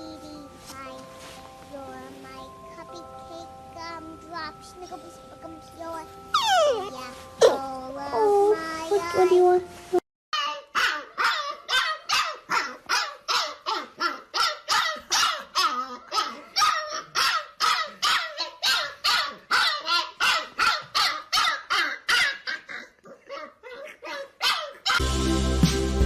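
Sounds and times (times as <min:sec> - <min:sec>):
dog barking: 0:07.4 - 0:07.6, 0:10.7 - 0:25.0.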